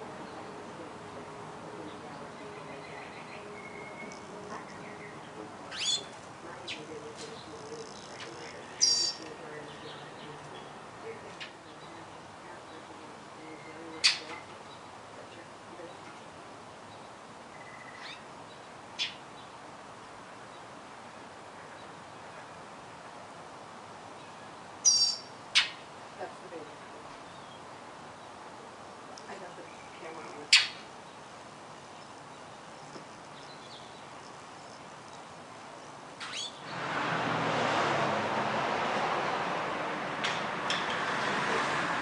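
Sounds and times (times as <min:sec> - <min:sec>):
songbirds chirping: 0:00.0 - 0:37.0
passing road traffic: 0:00.0 - 0:42.0
thin rising bird call: 0:02.6 - 0:06.1, 0:24.2 - 0:25.8, 0:36.2 - 0:36.8
sharp bird alarm call: 0:02.8 - 0:06.1, 0:07.4 - 0:09.3, 0:17.6 - 0:18.3, 0:24.8 - 0:25.8, 0:29.8 - 0:30.9, 0:36.2 - 0:36.6.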